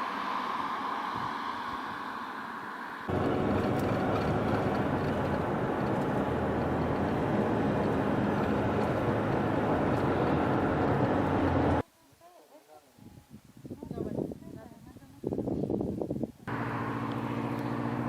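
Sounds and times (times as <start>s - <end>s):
vehicle engine and road noise: 0.0s - 11.8s, 16.4s - 18.0s.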